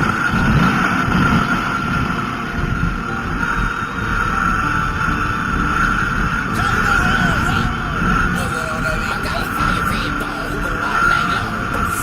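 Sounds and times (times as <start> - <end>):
wind buffeting microphone: 0.0 - 6.6.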